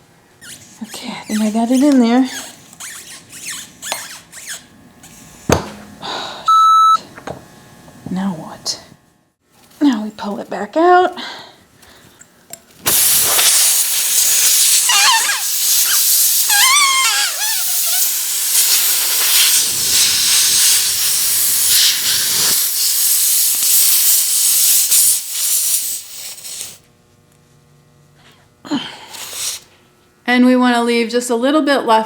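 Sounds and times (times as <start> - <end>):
short wavering squeals: 0.4 - 5.2, 14.8 - 18.0
air hissing from tire: 12.9 - 26.8, 29.2 - 29.7.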